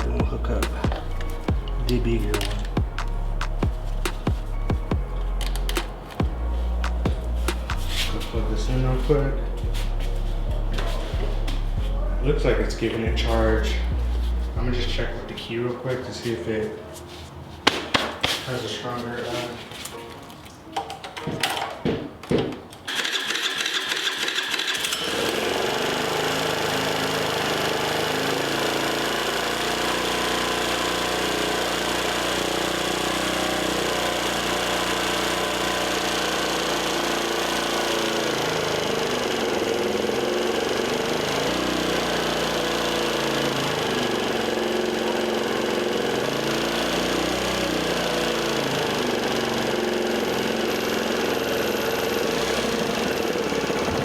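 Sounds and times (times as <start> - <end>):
small engine starting and idling: 0.0 - 15.2, 22.9 - 54.0.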